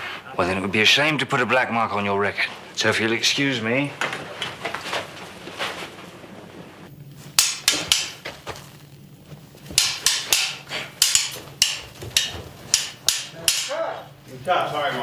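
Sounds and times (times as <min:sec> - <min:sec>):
swords clashing: 0:07.4 - 0:08.3, 0:09.7 - 0:14.0.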